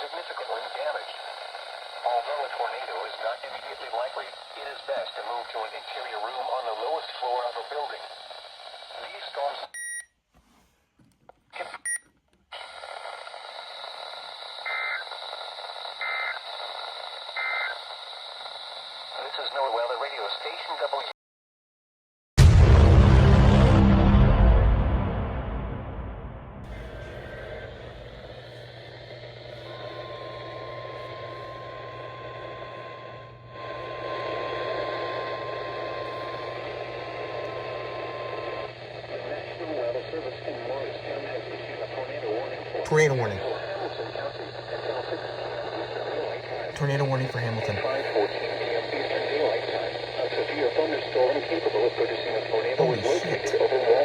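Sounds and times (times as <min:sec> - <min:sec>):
radio static hiss: 0:00.0 - 0:09.8, 0:11.6 - 0:21.1, 0:26.7 - 0:54.0
steady low hum: 0:23.4 - 0:53.9
steady alarm tone: 0:26.7 - 0:36.9.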